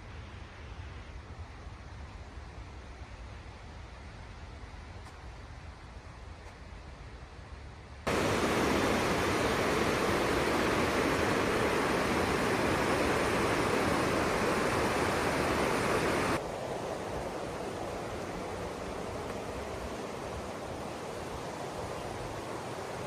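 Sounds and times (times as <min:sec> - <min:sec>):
river water rushing over rocks: 0:08.1 - 0:23.0.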